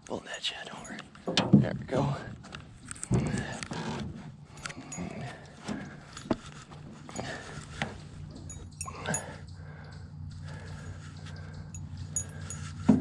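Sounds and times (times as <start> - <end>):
knocks and clatters in boat: 1.2 - 1.9.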